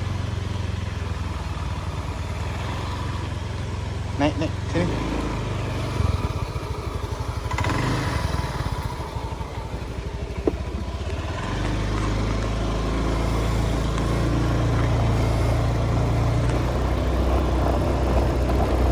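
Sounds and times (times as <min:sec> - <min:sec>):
motorbike engine: 0:00.0 - 0:18.9.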